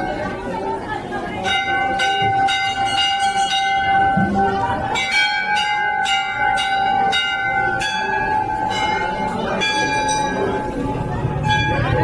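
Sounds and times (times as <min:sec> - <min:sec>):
temple bells ringing: 0:00.0 - 0:12.0.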